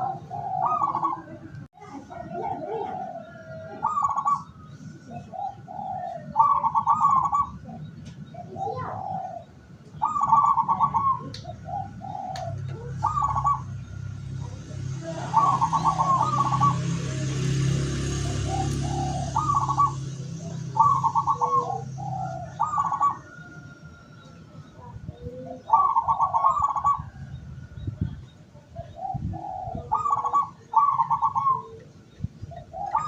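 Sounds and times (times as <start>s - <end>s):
doves cooing: 0.0s - 33.0s.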